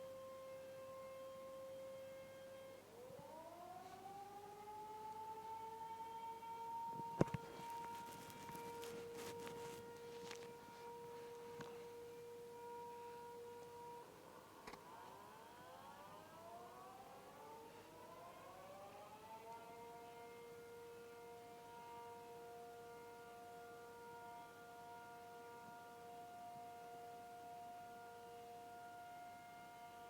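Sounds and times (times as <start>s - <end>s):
faint warning siren: 0.0s - 30.0s.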